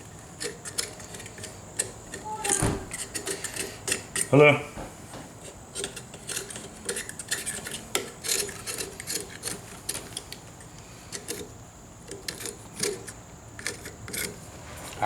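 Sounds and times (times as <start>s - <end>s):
knife blade scraping: 0.4s - 4.3s, 5.4s - 10.4s, 12.1s - 14.4s.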